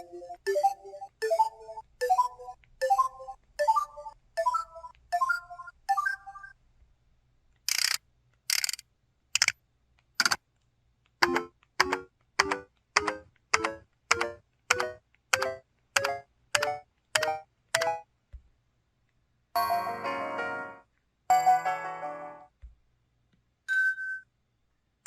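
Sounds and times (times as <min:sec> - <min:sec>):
sharp clicks: 0:07.5 - 0:18.0.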